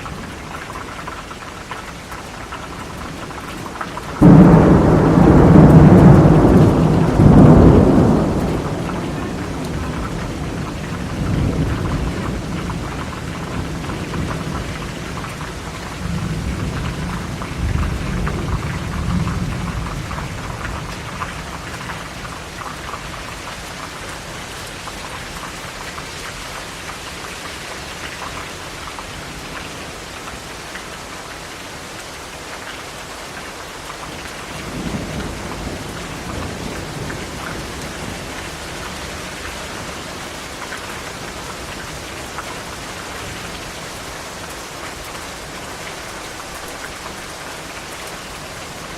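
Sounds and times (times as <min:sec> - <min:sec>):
heavy rain: 0:00.0 - 0:48.9
thunder rumbling: 0:04.0 - 0:22.1.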